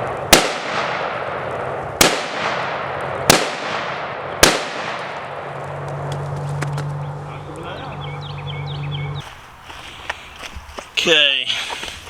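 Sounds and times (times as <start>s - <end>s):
rifle shots with echo: 0.0s - 6.1s.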